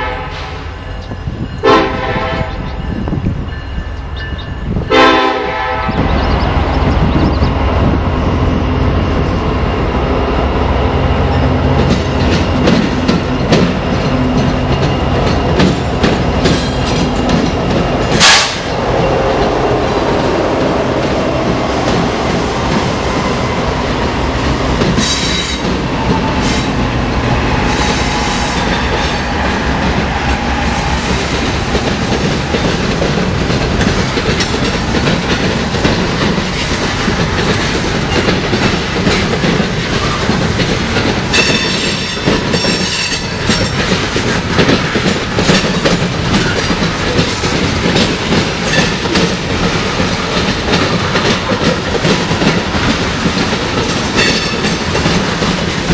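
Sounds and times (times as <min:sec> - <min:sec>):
train wheels clacking over rails: 0:11.2 - 0:55.9.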